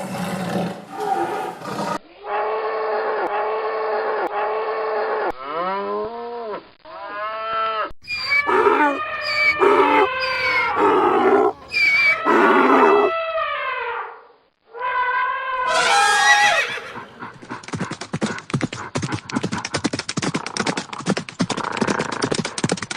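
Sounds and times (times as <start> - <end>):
animal cries sliding downward: 8.1 - 13.2.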